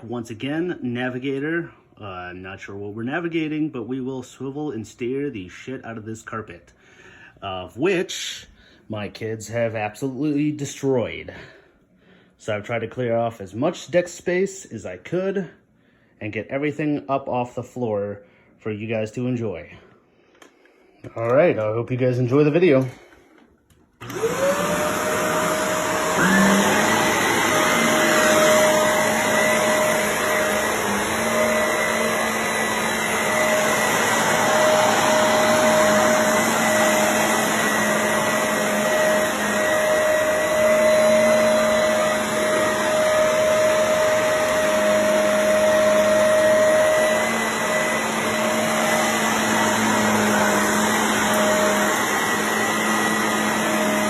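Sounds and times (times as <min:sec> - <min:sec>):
vacuum cleaner motor whine: 0:24.0 - 0:54.0
vacuuming carpet: 0:24.0 - 0:54.0.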